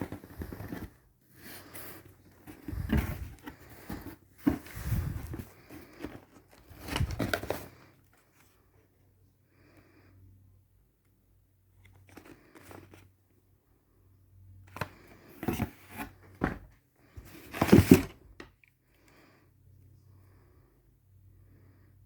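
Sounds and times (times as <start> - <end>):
packaging rustling and tearing: 2.3 - 7.8.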